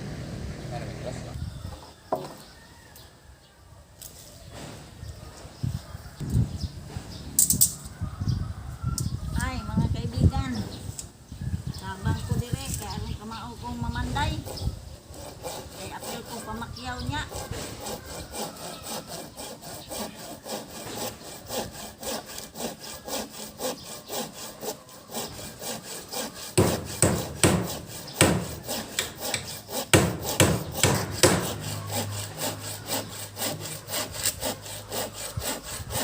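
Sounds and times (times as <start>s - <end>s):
hand saw cutting wood: 14.0s - 36.0s.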